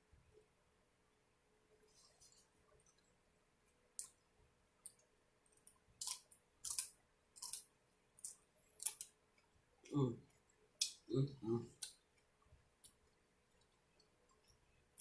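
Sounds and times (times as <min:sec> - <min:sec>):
mouth clicks while chewing: 0:04.0 - 0:04.2.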